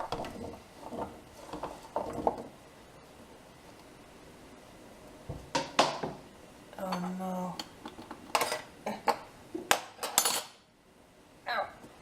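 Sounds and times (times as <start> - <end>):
ingredients clattering into pot: 7.6 - 10.6.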